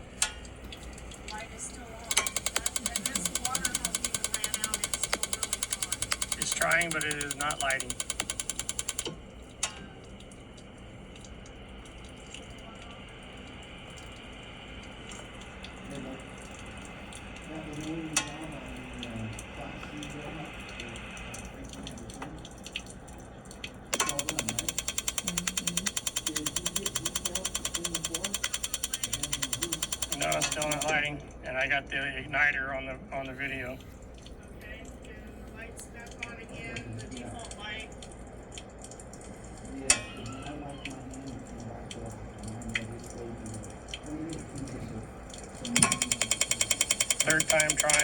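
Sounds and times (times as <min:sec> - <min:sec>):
water running from faucets: 0:00.0 - 0:48.0
electronic igniter clicking: 0:00.2 - 0:09.8, 0:23.6 - 0:31.1, 0:45.6 - 0:48.0.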